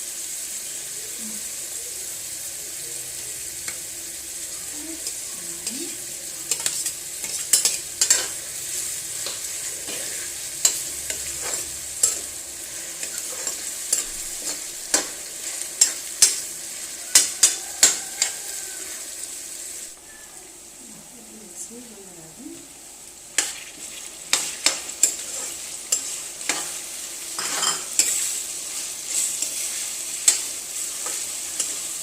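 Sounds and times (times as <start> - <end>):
food sizzling in a pan: 0.0 - 32.0
spatula scraping a pan: 5.0 - 19.2, 23.4 - 32.0.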